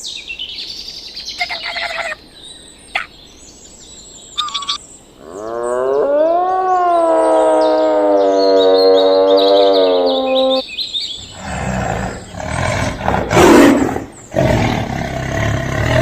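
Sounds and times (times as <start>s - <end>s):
high bird chirps: 4.2s - 4.8s, 7.6s - 11.5s
long rising animal call: 5.2s - 10.6s.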